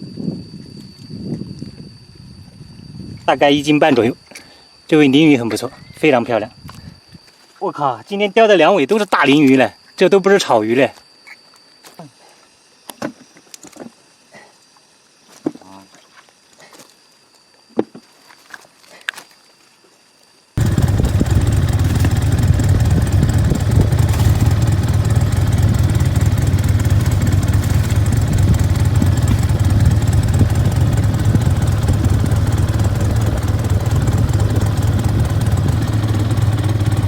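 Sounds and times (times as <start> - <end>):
small engine running: 20.6 - 37.0.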